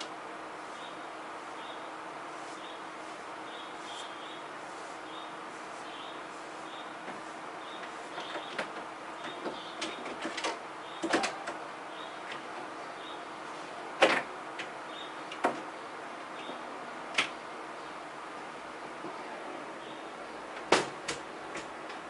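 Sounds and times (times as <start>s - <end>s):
steady hiss: 0.0s - 9.3s.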